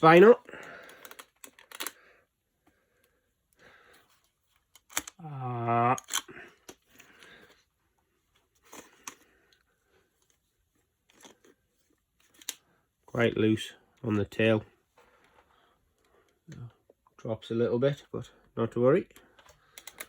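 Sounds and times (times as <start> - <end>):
plastic toy limbs clicking: 0.8 - 2.0, 4.7 - 5.2, 6.0 - 6.8, 19.4 - 20.0
person humming: 5.2 - 6.1.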